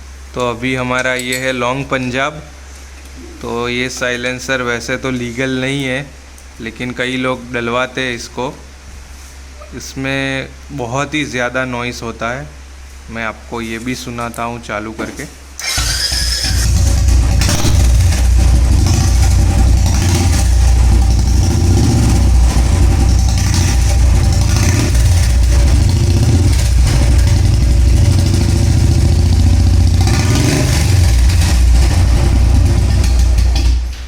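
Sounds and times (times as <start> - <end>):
motorcycle engine revving: 15.6 - 34.0.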